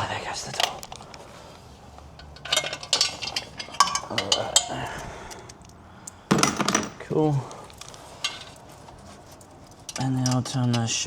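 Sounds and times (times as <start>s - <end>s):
metal hand tools clinking: 2.2s - 4.8s, 7.8s - 11.0s
metal tool clank: 2.2s - 4.8s.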